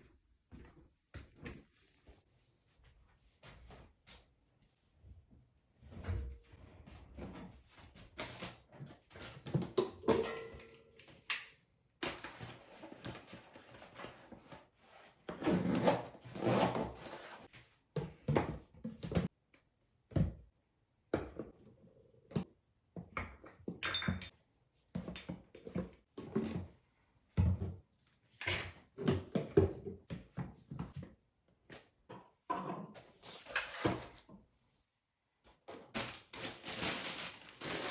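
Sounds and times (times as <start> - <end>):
household objects knocking and clattering: 22.4 - 24.4.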